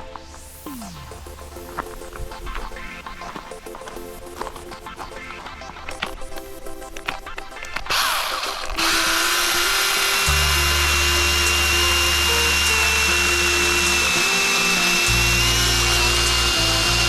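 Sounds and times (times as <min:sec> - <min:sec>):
background music with bass line: 0:00.0 - 0:17.0
brush cutter motor whining: 0:07.8 - 0:17.0.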